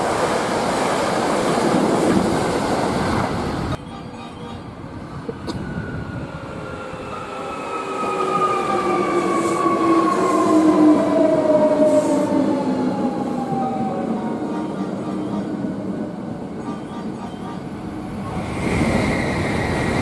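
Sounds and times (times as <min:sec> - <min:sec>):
train running noise: 0:00.0 - 0:20.0.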